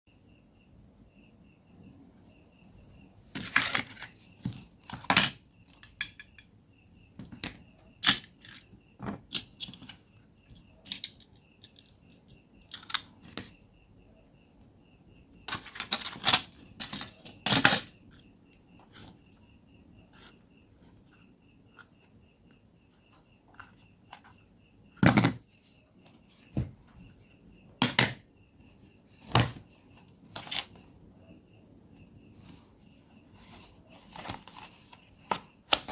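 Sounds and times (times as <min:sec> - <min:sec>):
small tools clicking and scraping: 0:09.3 - 0:13.4.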